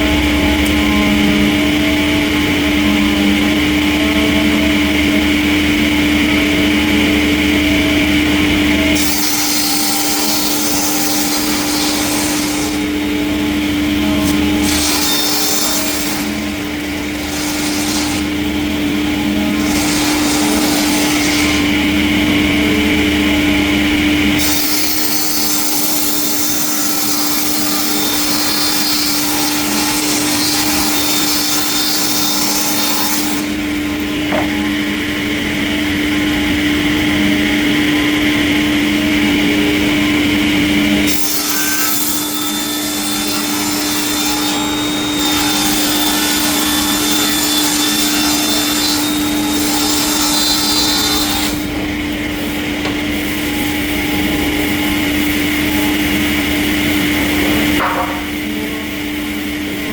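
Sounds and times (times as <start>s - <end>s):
sawmill machine hum: 0.0s - 59.9s
saw rasping through logs: 8.9s - 13.0s, 14.0s - 21.9s, 24.4s - 33.6s, 41.0s - 51.8s.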